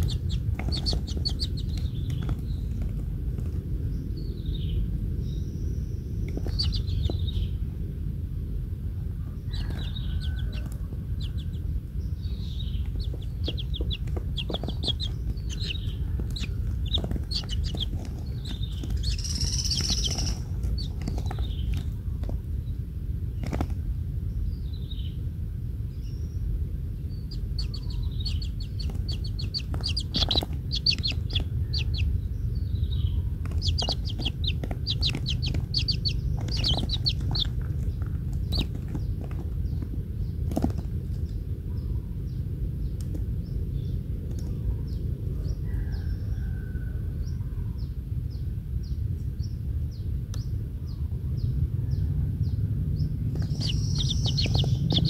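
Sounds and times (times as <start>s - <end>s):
bird chattering trills: 0.0s - 3.0s, 3.9s - 7.6s, 9.3s - 22.0s, 27.0s - 40.4s, 53.0s - 55.0s
steady low rumble: 0.0s - 55.0s.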